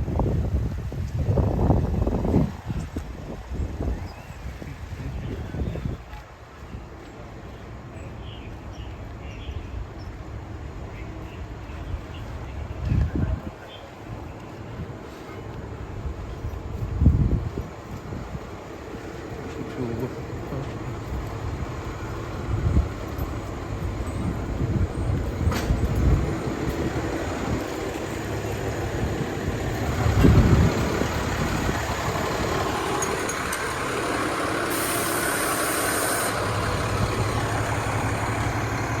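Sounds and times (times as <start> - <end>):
diesel engine rumbling: 0.0 - 39.0
air hiss: 32.5 - 38.3.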